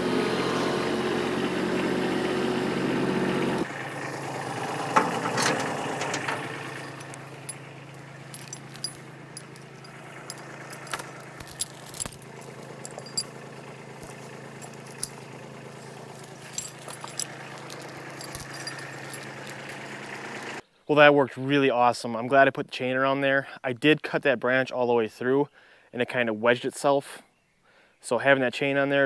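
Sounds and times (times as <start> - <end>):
sharp clicks knocks and rattles: 5.0 - 7.6.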